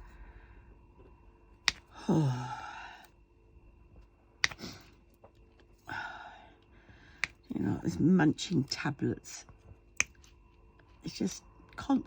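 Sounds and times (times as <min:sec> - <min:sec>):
soft breath: 0:00.0 - 0:00.8, 0:05.8 - 0:07.4
breathy sigh: 0:01.9 - 0:03.1, 0:05.9 - 0:07.2
sharp clicks: 0:07.2 - 0:07.4.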